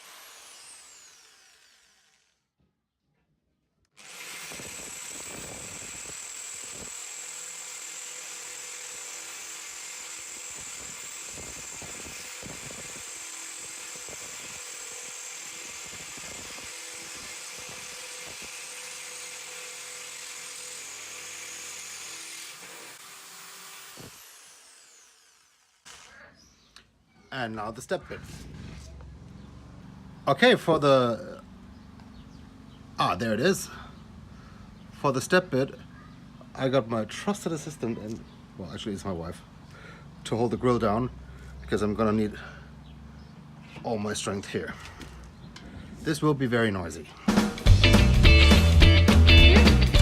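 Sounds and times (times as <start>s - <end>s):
power drill boring through metal: 0.0s - 2.4s, 4.0s - 26.3s.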